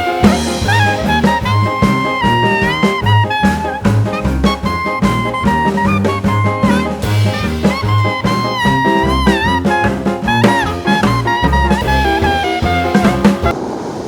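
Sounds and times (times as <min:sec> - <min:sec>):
brass swing music: 0:00.0 - 0:13.6.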